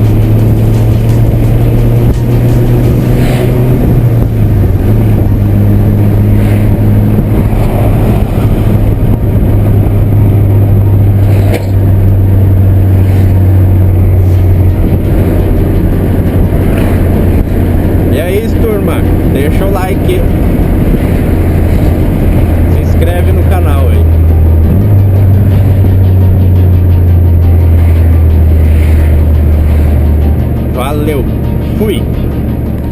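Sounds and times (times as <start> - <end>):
car engine and exhaust droning: 0.0 - 32.9.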